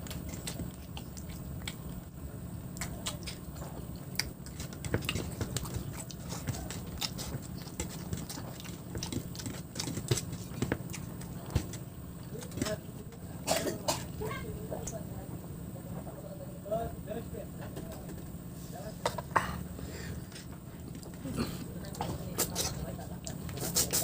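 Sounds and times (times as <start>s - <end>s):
person chewing and lip smacking: 0.0s - 12.9s, 20.8s - 21.2s, 21.8s - 24.0s
steady low hum: 0.0s - 24.0s.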